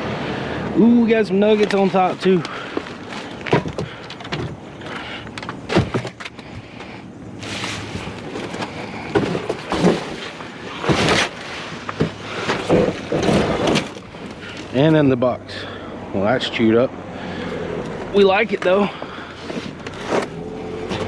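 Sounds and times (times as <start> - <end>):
junk items knocking and clattering: 1.4 - 14.9, 17.8 - 21.0.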